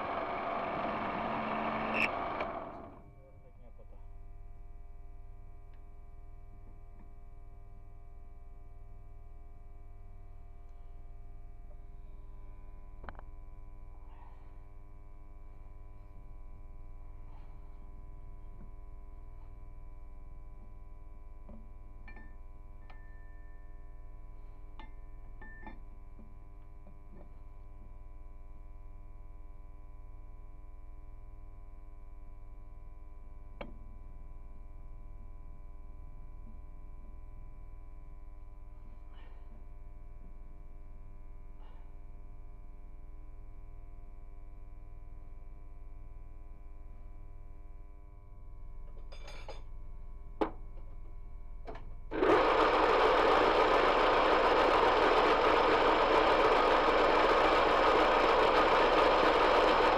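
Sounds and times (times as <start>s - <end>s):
lathe machine hum: 0.0s - 3.0s, 52.1s - 59.9s
rough mechanical running noise: 0.0s - 3.1s, 52.1s - 59.9s.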